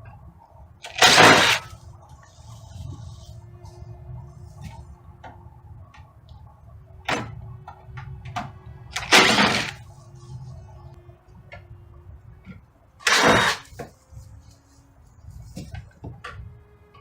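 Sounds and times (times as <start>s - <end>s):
low steady hum: 0.0s - 17.0s
scraping rush: 0.9s - 1.8s, 8.9s - 10.0s, 13.0s - 13.7s.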